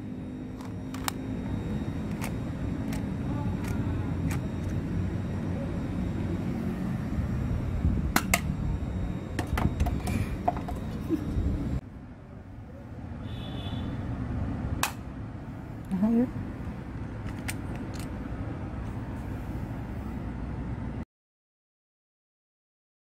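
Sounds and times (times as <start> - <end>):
steady low rumble: 0.0 - 13.2
airsoft pistol clicks and snaps: 14.8 - 15.0.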